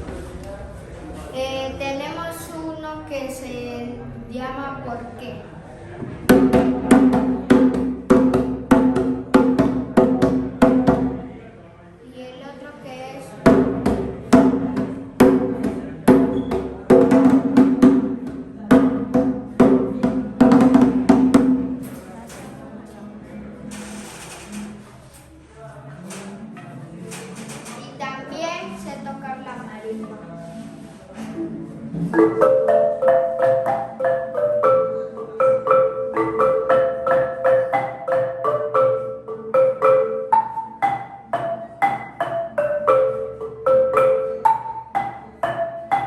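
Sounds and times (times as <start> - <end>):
hand drum struck: 6.3 - 11.3, 13.4 - 22.0
marimba played with mallets: 13.5 - 21.9, 31.4 - 46.0.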